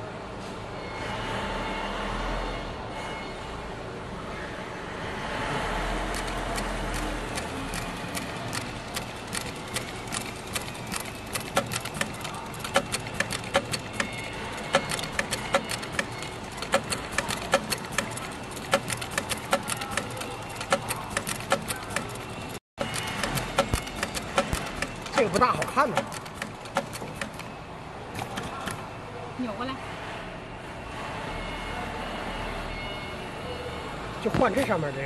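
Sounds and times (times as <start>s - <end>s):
sewing machine stitching: 6.1s - 27.5s.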